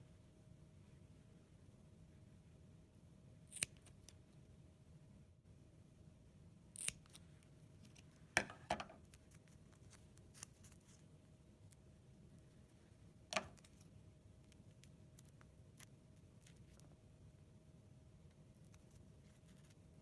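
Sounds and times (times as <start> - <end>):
scissors snipping: 3.5 - 4.2, 6.8 - 8.1.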